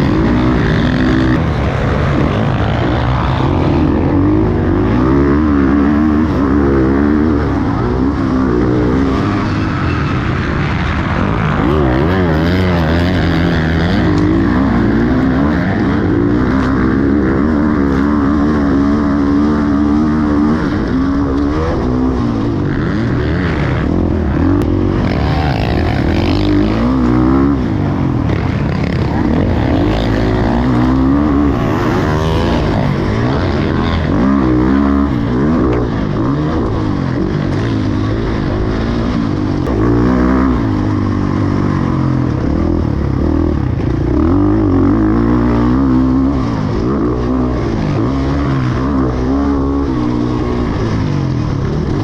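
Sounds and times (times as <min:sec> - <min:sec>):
dirt bike engine revving: 0:00.0 - 0:52.0.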